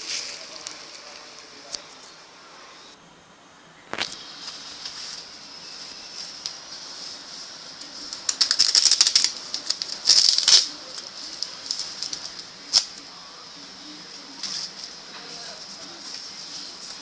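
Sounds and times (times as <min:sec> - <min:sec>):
packaging crinkling: 0:03.9 - 0:12.9.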